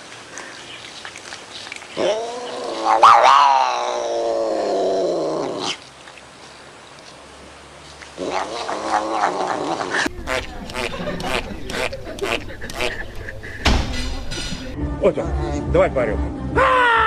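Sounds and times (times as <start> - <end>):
cat yowling: 2.0 - 4.8.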